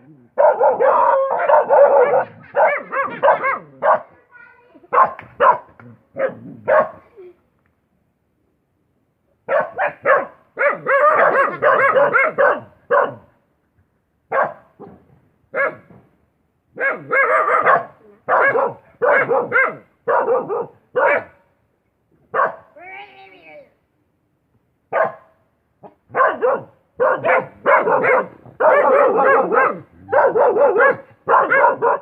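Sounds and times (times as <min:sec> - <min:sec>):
dog barking: 0:00.4 - 0:04.2, 0:04.9 - 0:07.1, 0:09.5 - 0:13.4, 0:14.3 - 0:15.9, 0:16.8 - 0:21.5, 0:22.3 - 0:22.7, 0:24.9 - 0:32.0.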